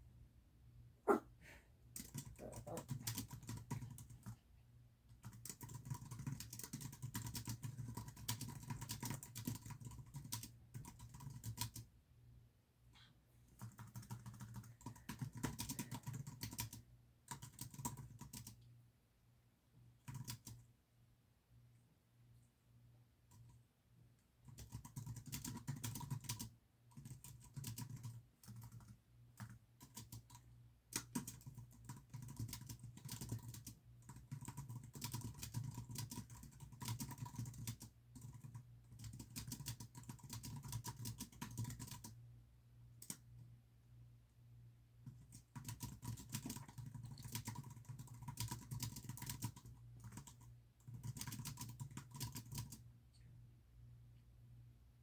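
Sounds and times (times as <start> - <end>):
typing on computer keyboard: 2.0 - 4.4, 5.2 - 11.9, 13.6 - 18.7, 20.0 - 20.7, 24.4 - 42.2, 43.0 - 43.2, 45.0 - 52.8.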